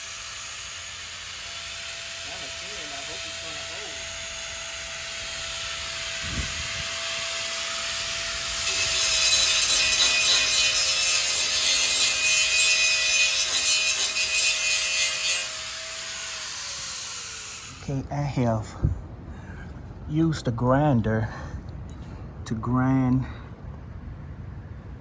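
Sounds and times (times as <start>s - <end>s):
disc grinding steel: 0.0s - 17.9s
grinder motor whine: 0.0s - 17.9s.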